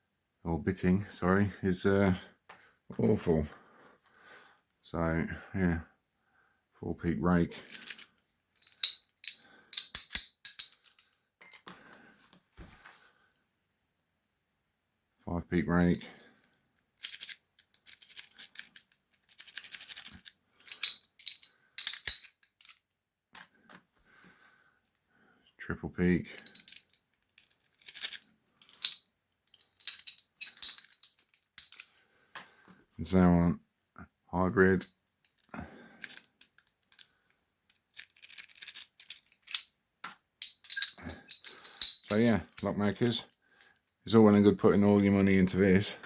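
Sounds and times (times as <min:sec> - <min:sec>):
lock pick raking over pins: 0:07.6 - 0:11.7, 0:17.0 - 0:22.8, 0:26.3 - 0:32.5, 0:34.8 - 0:43.8.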